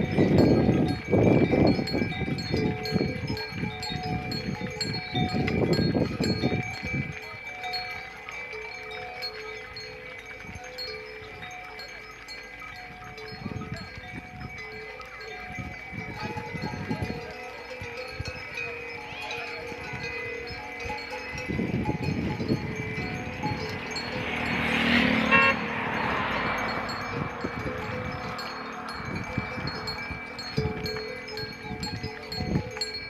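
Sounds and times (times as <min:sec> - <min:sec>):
cowbells ringing: 0:00.0 - 0:33.0.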